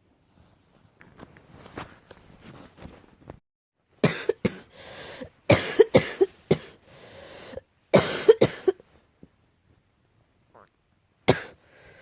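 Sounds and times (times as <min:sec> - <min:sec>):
person coughing: 0:04.0 - 0:04.7, 0:05.5 - 0:06.8, 0:08.0 - 0:08.8, 0:11.3 - 0:11.6.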